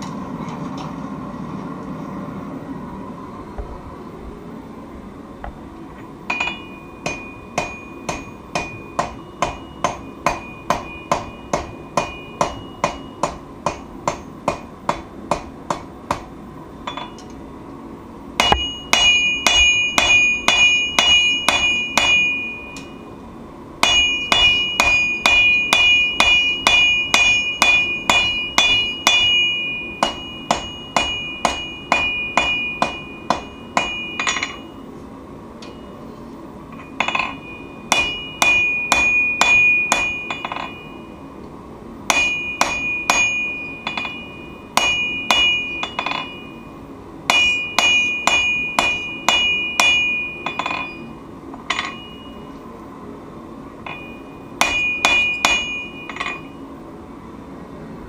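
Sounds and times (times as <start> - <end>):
hammer ringing on anvil: 6.3 - 17.4, 18.4 - 23.0, 23.8 - 34.9, 36.7 - 41.2, 42.1 - 52.6, 53.8 - 56.7.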